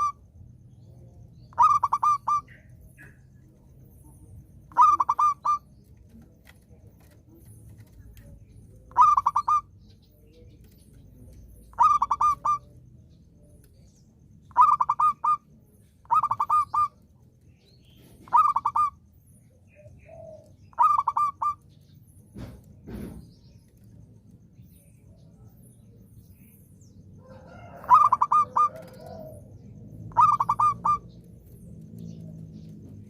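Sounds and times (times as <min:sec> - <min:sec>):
dove cooing: 0:00.0 - 0:00.3, 0:01.5 - 0:03.5, 0:04.7 - 0:12.8, 0:14.5 - 0:15.4, 0:16.0 - 0:17.0, 0:18.0 - 0:19.0, 0:19.7 - 0:21.6, 0:27.2 - 0:31.4.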